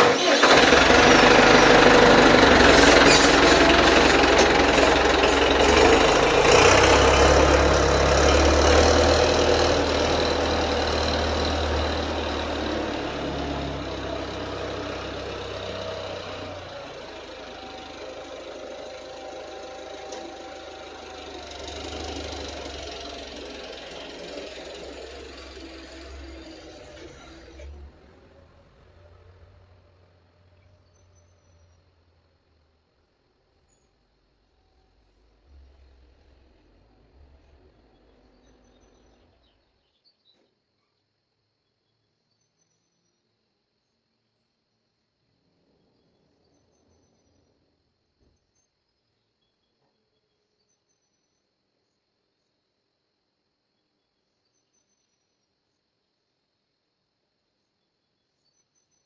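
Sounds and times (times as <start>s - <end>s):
loud tractor diesel engine: 0.0s - 31.7s.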